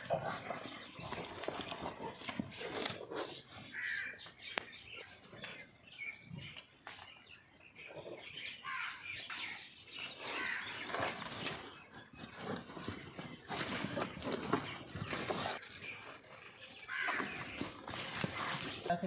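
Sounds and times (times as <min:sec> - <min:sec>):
birds calling: 0:00.0 - 0:19.0
crows cawing: 0:03.7 - 0:04.3, 0:08.6 - 0:09.0, 0:10.3 - 0:10.8, 0:16.9 - 0:17.6.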